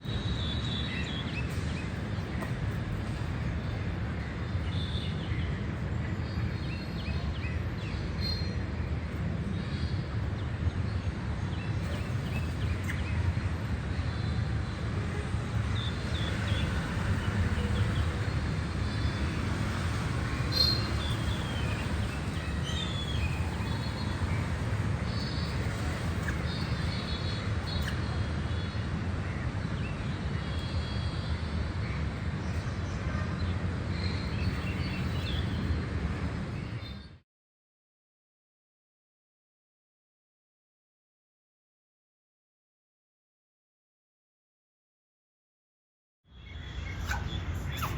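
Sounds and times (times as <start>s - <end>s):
bird chirps: 46.4s - 47.9s.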